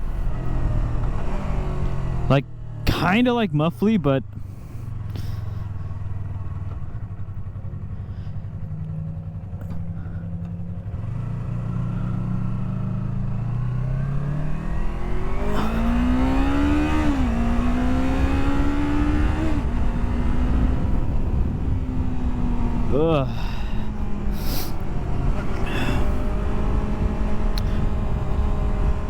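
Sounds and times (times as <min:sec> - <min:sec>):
motorcycle engine accelerating: 0:00.0 - 0:29.0
rushing wind noise: 0:23.6 - 0:29.0.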